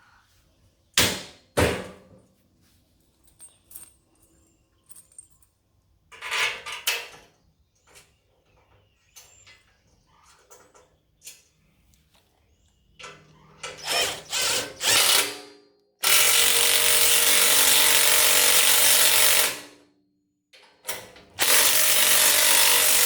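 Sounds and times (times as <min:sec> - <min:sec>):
metal parts clinking: 0:03.1 - 0:05.6.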